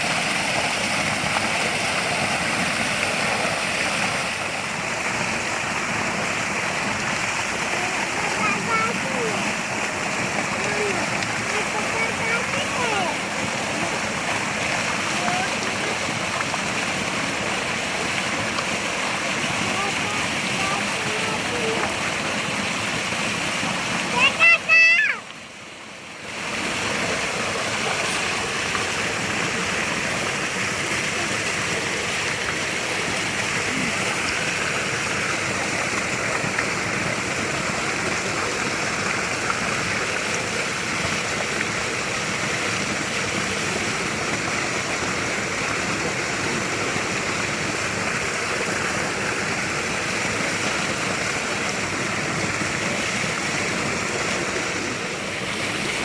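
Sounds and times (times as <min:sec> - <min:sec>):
running water flowing: 0:00.0 - 0:56.0.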